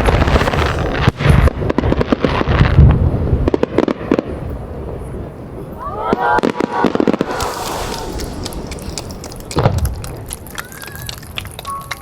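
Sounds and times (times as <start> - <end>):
crackling firework pops: 0.0 - 4.4, 6.2 - 12.0.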